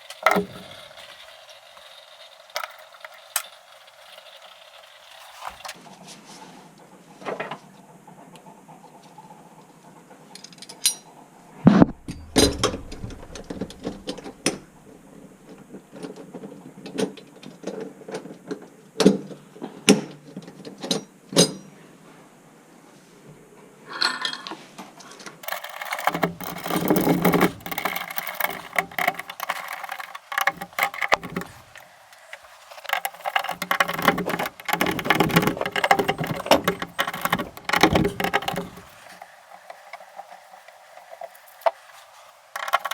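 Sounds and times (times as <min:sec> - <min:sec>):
tools and metal parts clattering: 0:25.4 - 0:42.9.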